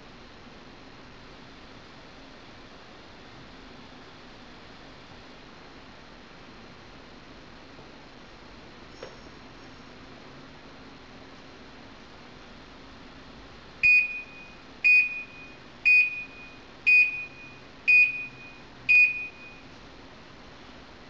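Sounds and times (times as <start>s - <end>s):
dishwasher beeps: 13.8s - 19.6s.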